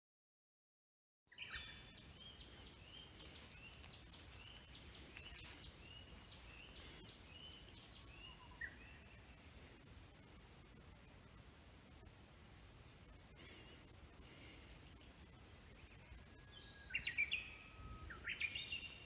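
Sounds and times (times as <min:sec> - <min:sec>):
small birds chirping: 0:01.3 - 0:19.0.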